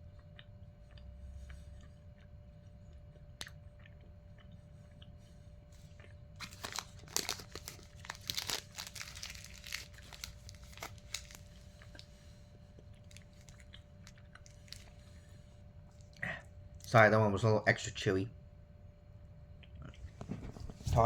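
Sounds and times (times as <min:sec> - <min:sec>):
person chewing sticky candy: 0:00.0 - 0:17.0.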